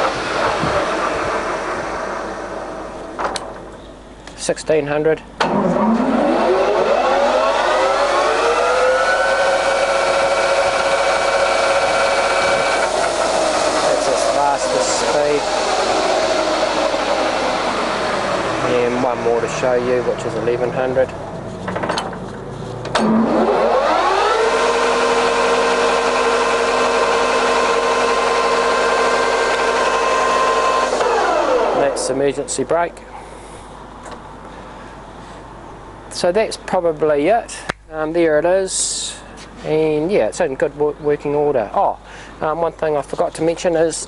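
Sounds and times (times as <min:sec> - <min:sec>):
lathe spindle whine: 0:05.5 - 0:20.9, 0:23.0 - 0:32.1.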